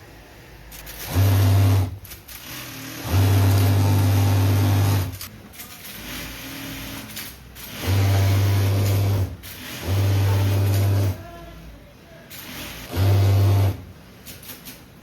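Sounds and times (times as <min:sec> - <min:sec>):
sewing machine motor buzzing: 0:00.8 - 0:05.2, 0:06.0 - 0:11.2, 0:12.6 - 0:13.8.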